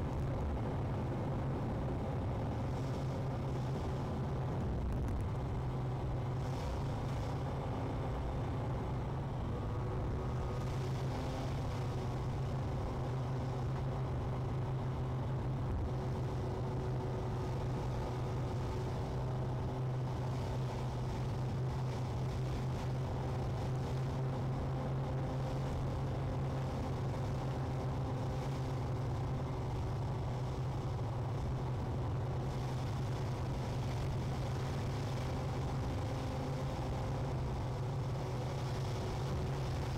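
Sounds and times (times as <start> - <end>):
car engine and road drone: 0.0 - 39.9.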